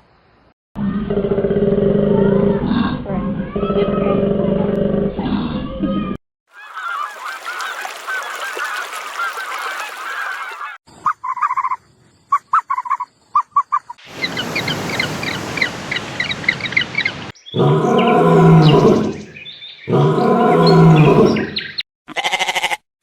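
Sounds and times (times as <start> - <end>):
poultry calling: 6.6 - 22.8.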